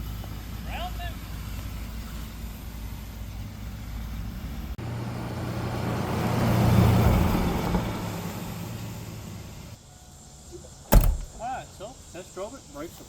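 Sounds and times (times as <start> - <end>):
car engine hum: 10.9 - 11.5.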